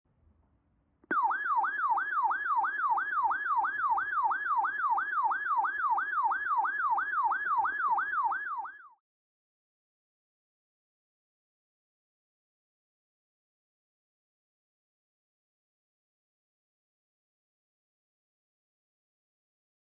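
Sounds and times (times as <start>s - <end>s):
electronic siren yelping: 1.1s - 9.0s.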